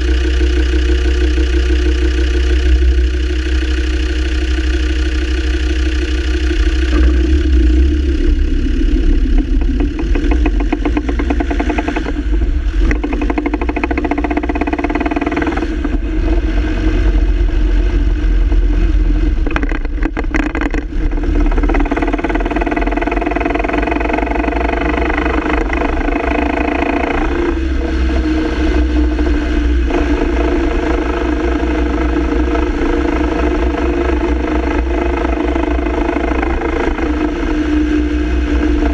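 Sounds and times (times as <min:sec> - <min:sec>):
diesel engine running: 0:00.0 - 0:38.9
drivetrain noise: 0:00.0 - 0:38.9.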